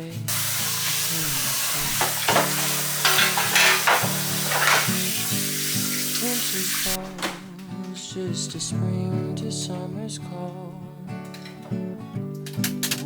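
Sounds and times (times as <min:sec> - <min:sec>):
soft pop song: 0:00.0 - 0:13.0
steady hiss with scratchy bursts: 0:00.2 - 0:07.0.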